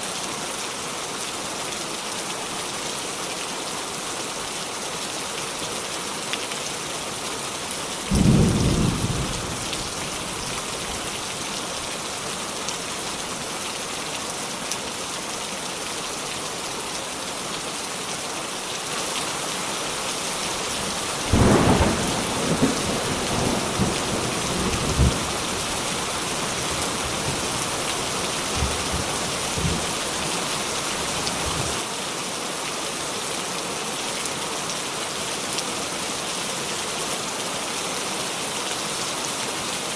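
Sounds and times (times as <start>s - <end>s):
steady rain: 0.0s - 39.9s
thunder rumbling: 8.1s - 10.4s, 21.3s - 25.4s.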